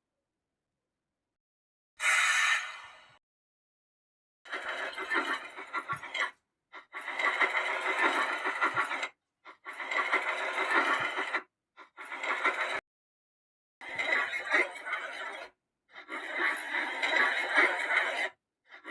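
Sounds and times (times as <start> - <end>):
rattling train sound effect: 4.5 - 12.8, 13.8 - 15.5, 16.1 - 18.4.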